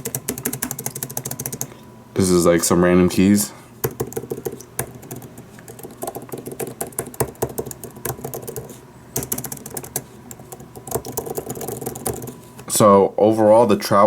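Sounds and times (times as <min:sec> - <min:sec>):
keyboard keys clicking: 0:00.0 - 0:01.7, 0:03.8 - 0:12.4.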